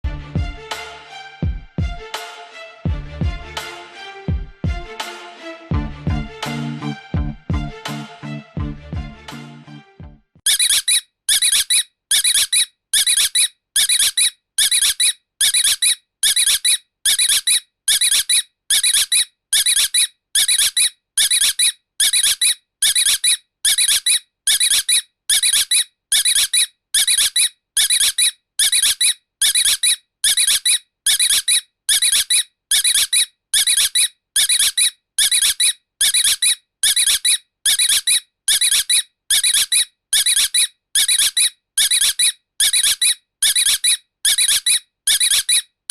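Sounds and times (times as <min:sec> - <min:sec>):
high-pitched squeak: 0:10.4 - 0:45.7.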